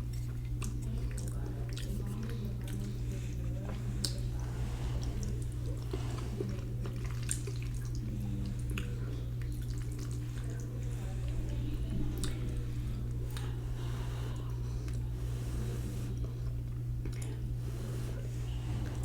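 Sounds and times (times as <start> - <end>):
steady low hum: 0.0 - 19.0
person chewing: 3.7 - 10.5, 12.1 - 19.0.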